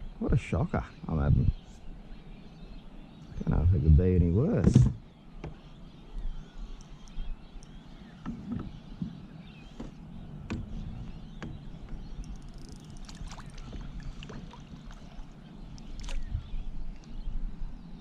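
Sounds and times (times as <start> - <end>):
wind and water rumble: 0.0 - 18.0
clicks and knocks on kayak: 4.6 - 5.6.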